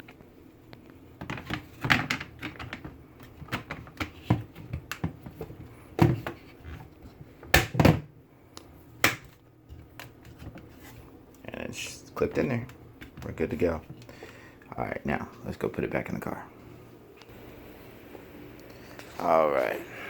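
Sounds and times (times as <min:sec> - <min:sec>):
plastic clicks and knocks: 0:01.2 - 0:06.4.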